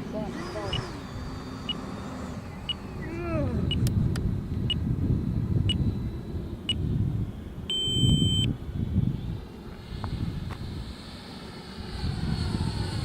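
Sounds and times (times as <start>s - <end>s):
short high beeps: 7.7s - 8.5s.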